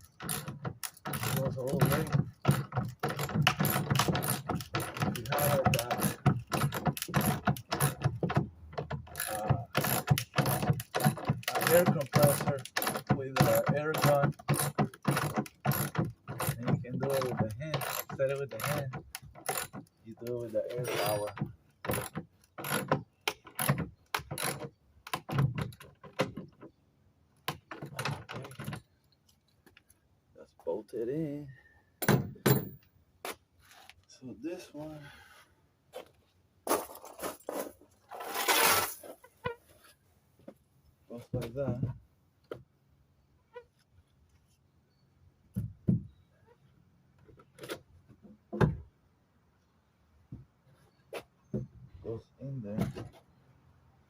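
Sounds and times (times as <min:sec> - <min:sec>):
knocks of framing parts being fitted: 0:00.0 - 0:26.8, 0:32.0 - 0:33.4
deep thump: 0:32.0 - 0:32.8.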